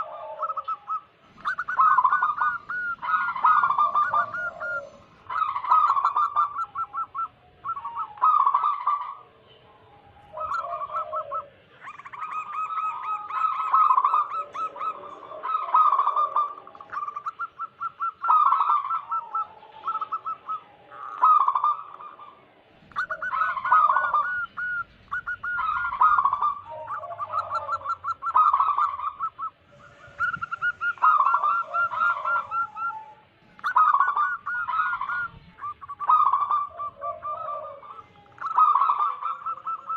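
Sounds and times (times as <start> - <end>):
doves cooing: 0.0 - 39.9.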